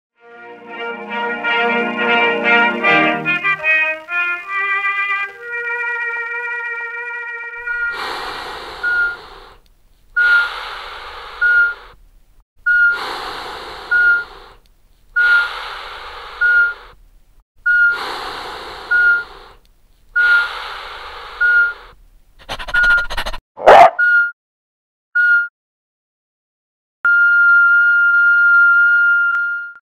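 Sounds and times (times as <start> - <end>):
patient monitor beeping: 7.6 - 9.6, 10.2 - 10.5, 11.3 - 11.9, 12.7 - 13.0, 13.8 - 14.5, 16.4 - 16.9, 17.7 - 18.0, 18.8 - 19.4, 21.3 - 21.9, 22.6 - 24.3
rhythmic whoosh of breaths: 7.6 - 12.0, 12.7 - 14.6, 15.2 - 17.0, 17.7 - 19.6, 20.2 - 23.4.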